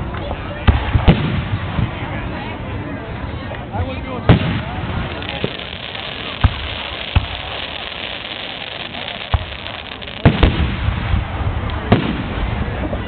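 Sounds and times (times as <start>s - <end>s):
fireworks shells bursting: 4.4s - 10.8s.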